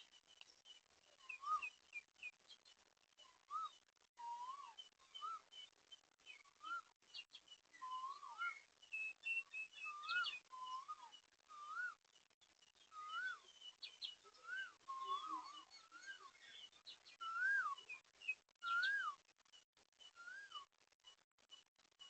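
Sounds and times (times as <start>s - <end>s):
faint high bird chirps: 0.1s - 22.0s
whistled bird note: 3.3s - 5.5s, 7.8s - 12.0s, 12.9s - 16.6s, 17.2s - 19.2s.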